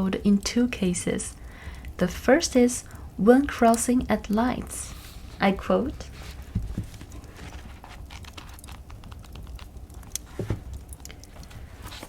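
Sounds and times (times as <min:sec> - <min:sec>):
book pages turning: 0:06.0 - 0:12.0.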